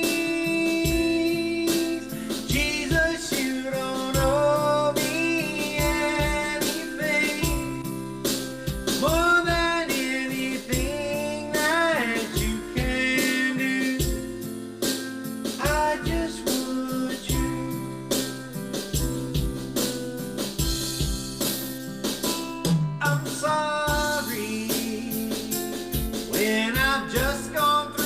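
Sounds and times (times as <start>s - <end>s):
person singing: 0.0s - 8.0s, 8.7s - 14.4s, 15.5s - 17.8s, 23.0s - 28.0s
drum beat: 0.0s - 28.0s
guitar: 0.0s - 28.0s.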